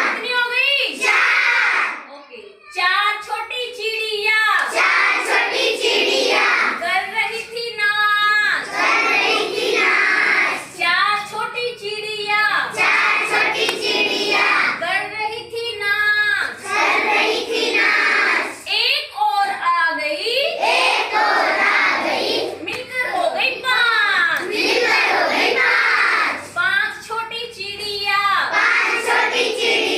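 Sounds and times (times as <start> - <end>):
children singing a rhythmic chant: 0.0 - 0.2, 0.9 - 2.0, 4.6 - 6.8, 8.6 - 10.8, 12.6 - 14.8, 16.4 - 18.7, 20.6 - 23.2, 24.4 - 26.6, 28.5 - 29.9.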